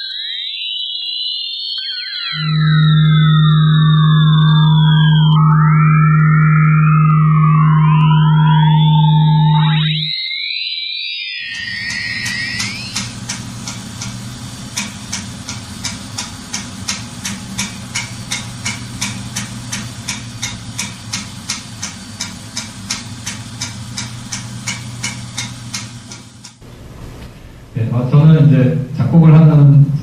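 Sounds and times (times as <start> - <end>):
low hum: 2.4 - 10.1, 11.4 - 29.1
rhythmic ticking: 11.4 - 26.6.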